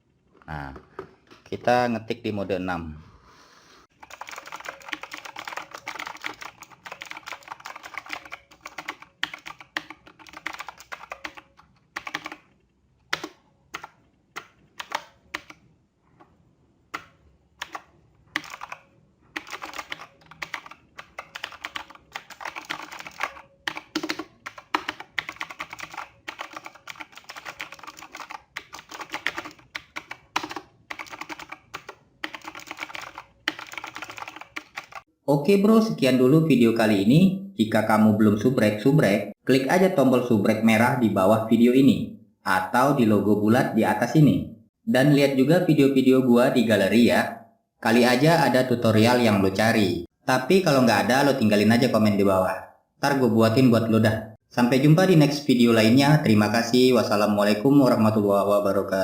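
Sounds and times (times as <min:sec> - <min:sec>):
mechanical keyboard typing: 0:04.0 - 0:15.6, 0:16.9 - 0:35.1.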